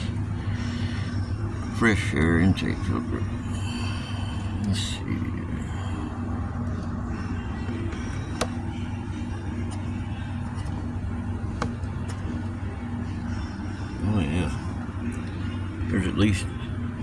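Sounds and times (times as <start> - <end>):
vehicle engine hum: 0.0 - 17.0
plastic cover clicks: 8.0 - 8.7, 11.5 - 12.3.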